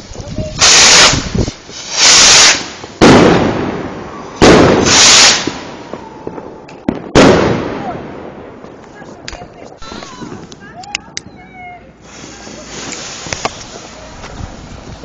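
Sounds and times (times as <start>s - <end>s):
firework hissing burst: 0.0s - 7.8s, 11.9s - 15.0s
loud firework bangs: 0.6s - 10.5s.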